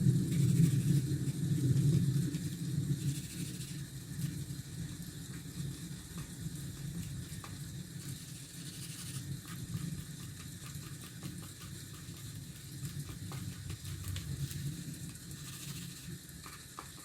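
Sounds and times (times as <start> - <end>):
low steady rumble: 0.0 - 11.2
steady rain hiss: 0.0 - 17.0.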